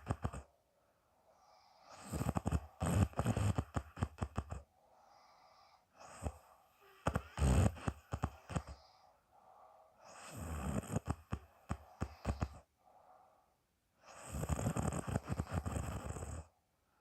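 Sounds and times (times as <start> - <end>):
woman snoring: 0.0 - 0.5, 1.5 - 9.0, 10.1 - 12.7, 14.1 - 16.5.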